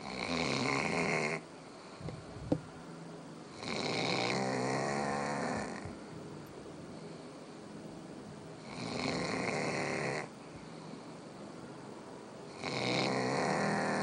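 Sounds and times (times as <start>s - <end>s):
dog snoring loudly: 0.0s - 1.4s, 3.5s - 6.0s, 8.6s - 10.3s, 12.5s - 14.0s.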